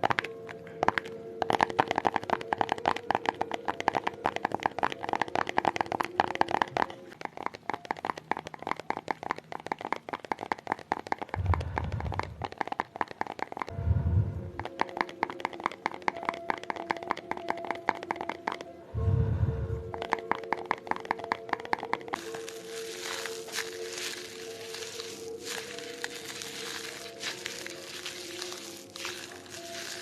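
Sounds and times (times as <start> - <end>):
low rumble: 11.4 - 12.4, 13.7 - 14.6, 19.0 - 19.9.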